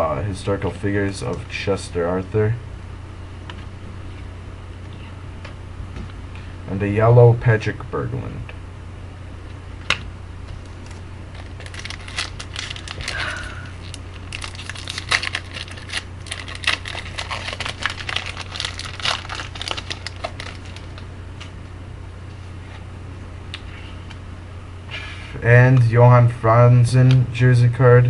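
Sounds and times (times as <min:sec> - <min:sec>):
low electrical hum: 0:00.0 - 0:28.0
foil wrapper crinkling: 0:10.6 - 0:21.1.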